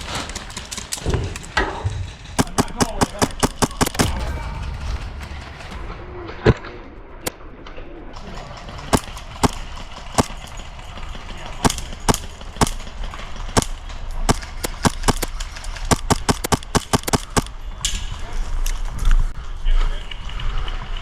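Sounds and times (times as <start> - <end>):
airsoft gunshots: 0.0 - 4.4, 8.2 - 17.7.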